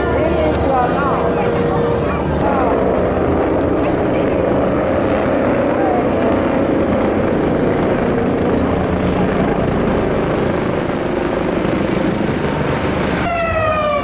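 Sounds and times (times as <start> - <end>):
helicopter rotor and engine: 0.0 - 14.0
loud falling pitched tone: 13.2 - 14.0.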